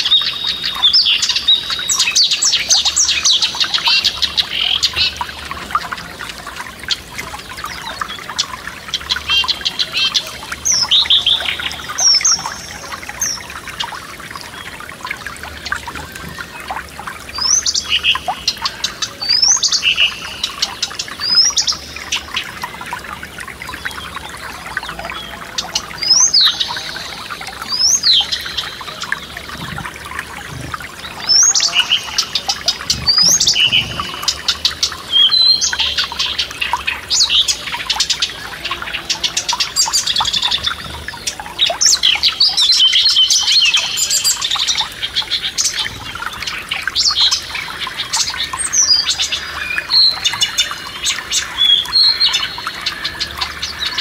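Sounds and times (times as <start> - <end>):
songbirds singing: 0.0 - 54.0
trickling stream: 0.0 - 54.0.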